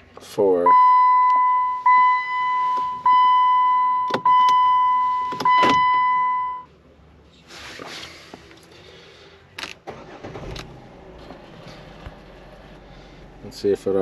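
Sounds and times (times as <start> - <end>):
dashboard chime tone: 0.7 - 6.7
short rustle: 7.3 - 8.9.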